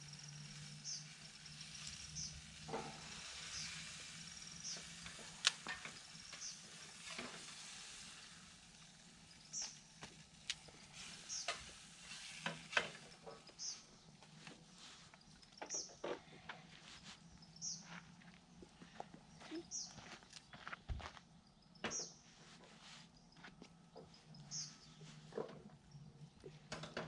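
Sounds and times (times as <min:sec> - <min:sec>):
wood fire crackling and popping: 0:00.0 - 0:13.6
bird chirping: 0:10.6 - 0:11.6, 0:13.0 - 0:14.2, 0:15.1 - 0:18.2, 0:23.2 - 0:25.2.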